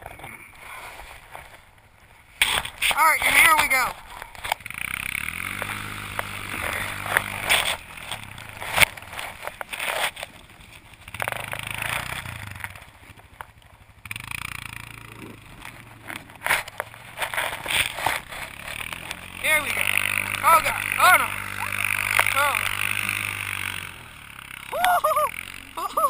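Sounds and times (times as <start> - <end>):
atv engine: 0.0 - 26.0
sled scraping across snow: 0.5 - 24.6.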